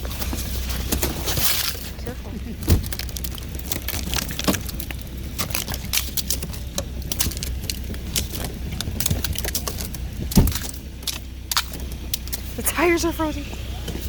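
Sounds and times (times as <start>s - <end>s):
freezing rain ticking: 0.0s - 14.0s
low steady rumble: 0.0s - 14.0s.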